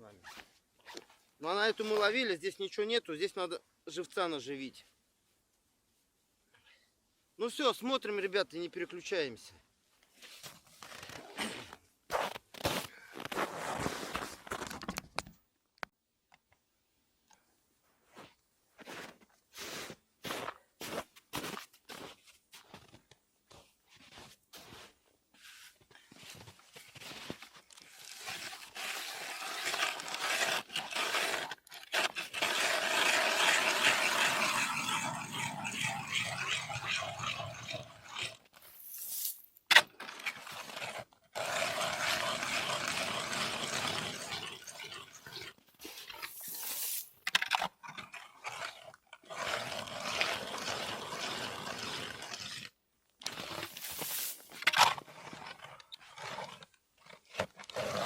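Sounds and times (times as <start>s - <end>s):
ice auger crunching through ice: 10.7s - 14.9s, 25.4s - 58.0s.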